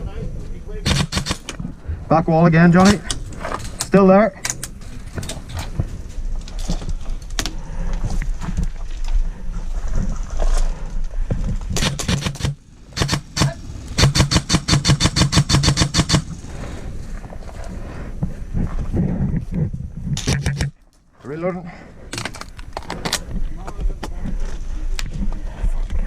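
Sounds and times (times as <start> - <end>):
airsoft gun firing: 0.8 - 1.6, 11.8 - 16.4
gun motor and gearbox: 0.8 - 1.6, 11.8 - 16.3.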